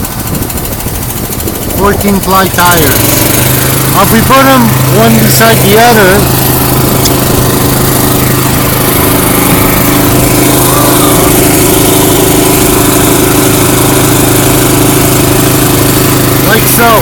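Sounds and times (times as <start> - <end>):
engine idling: 0.0 - 17.0.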